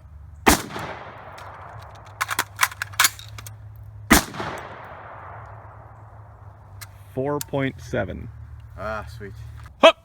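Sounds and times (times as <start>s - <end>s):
rifle shot with echo: 0.5s - 3.2s, 4.1s - 6.0s
metallic clicks and clanks: 1.3s - 3.5s.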